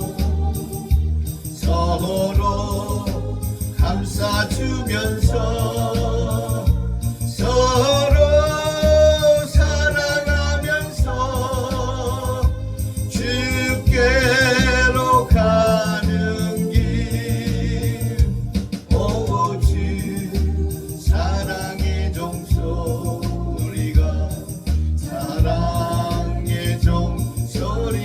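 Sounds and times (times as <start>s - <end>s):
backing track with bass beat: 0.0s - 28.0s
person singing a hymn: 0.0s - 28.0s.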